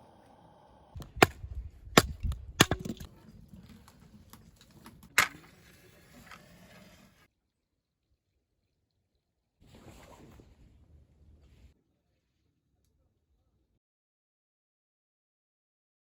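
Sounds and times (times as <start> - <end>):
wood knocks and splintering: 1.0 - 3.1
wood cracking: 1.0 - 5.4.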